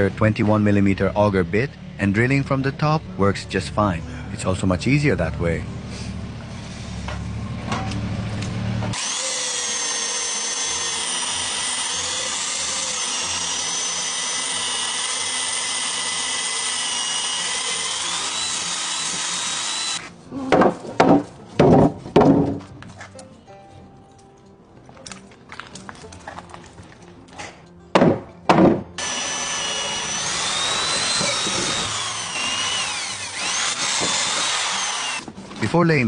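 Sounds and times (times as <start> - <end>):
power drill boring into wood: 8.9 - 20.0, 29.0 - 35.3.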